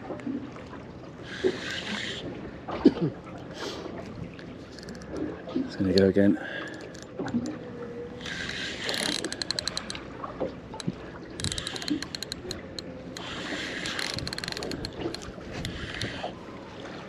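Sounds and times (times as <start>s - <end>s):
fishing reel drag clicking: 1.4s - 2.2s, 4.8s - 5.1s, 6.7s - 7.5s, 8.2s - 10.1s, 10.8s - 16.3s.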